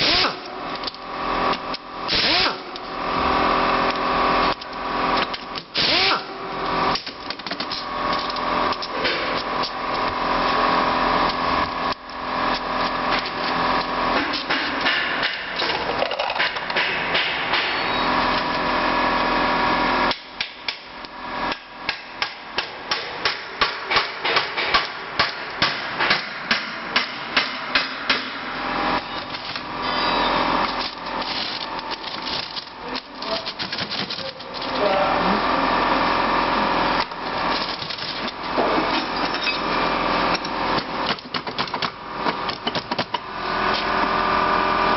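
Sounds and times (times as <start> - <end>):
steady mechanical hum: 0.0 - 44.9.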